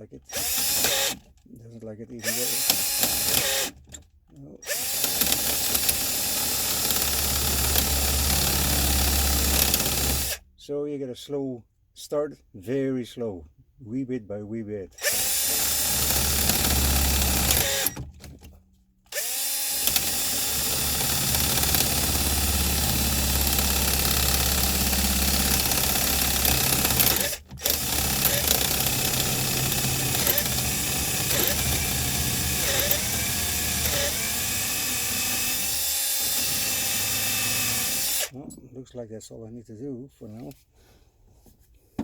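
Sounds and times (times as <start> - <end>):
power drill boring into metal: 0.3 - 1.2, 2.2 - 4.0, 4.6 - 10.4, 15.0 - 18.1, 19.1 - 38.4.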